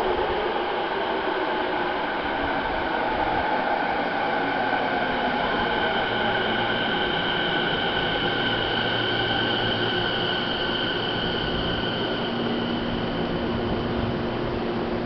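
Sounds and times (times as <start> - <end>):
electric train humming and whining: 0.0 - 15.0.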